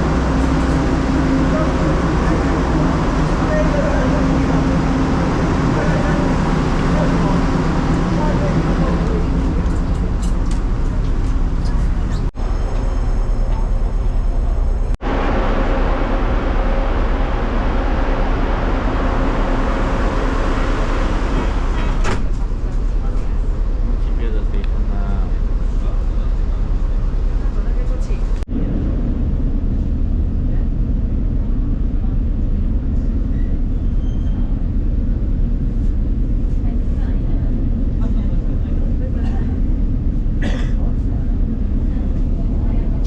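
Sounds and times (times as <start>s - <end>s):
vehicle rumble: 0.0s - 43.0s.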